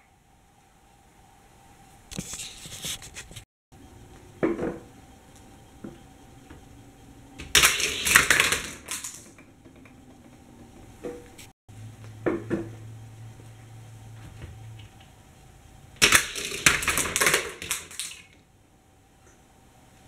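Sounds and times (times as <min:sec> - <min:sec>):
plastic toy pieces rattling: 0:16.0 - 0:18.3.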